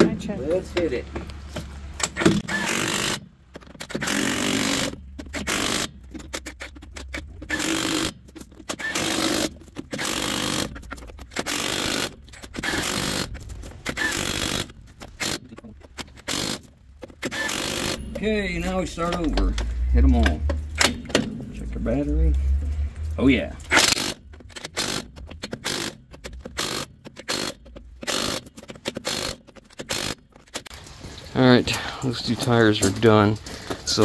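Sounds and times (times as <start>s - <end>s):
impact wrench hammering: 1.6s - 21.5s, 23.6s - 30.7s.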